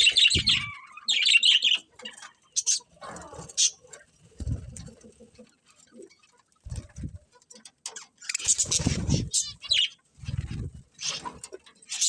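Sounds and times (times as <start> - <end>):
budgerigars chirping and chattering: 0.0 - 12.0.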